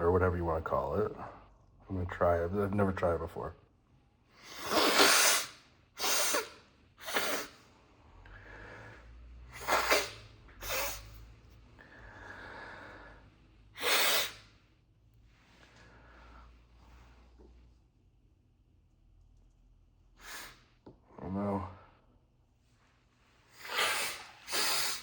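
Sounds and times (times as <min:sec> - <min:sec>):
man sniffing sharply: 0:04.4 - 0:07.7, 0:09.5 - 0:11.2, 0:12.9 - 0:14.6, 0:20.2 - 0:20.8, 0:23.5 - 0:25.0
soft breathing through nose: 0:07.6 - 0:09.8, 0:10.6 - 0:13.8, 0:15.2 - 0:17.6.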